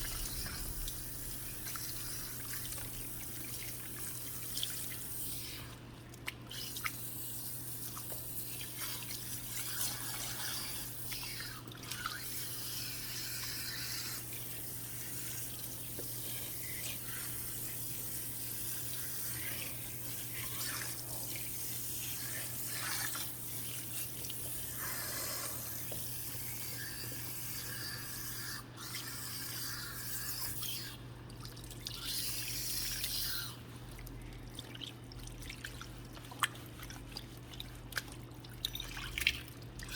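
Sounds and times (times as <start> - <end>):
water dripping: 0.0 - 5.2, 33.9 - 39.9
steady low hum: 0.0 - 6.1.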